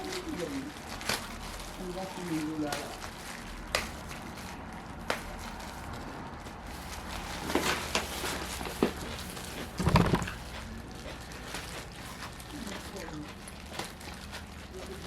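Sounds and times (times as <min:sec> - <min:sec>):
crinkling baked cooking bag: 0:00.0 - 0:15.0
rustling and knocking: 0:09.6 - 0:10.5.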